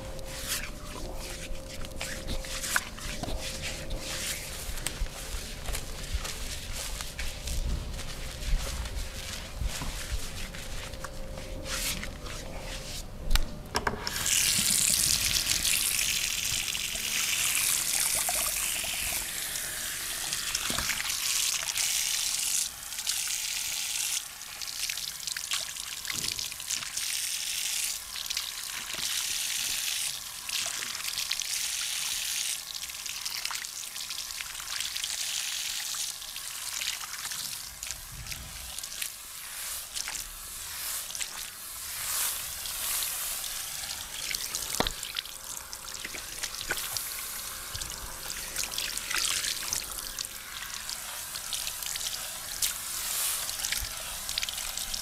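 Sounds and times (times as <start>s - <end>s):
scratchy close-up rubbing: 0.2s - 13.1s.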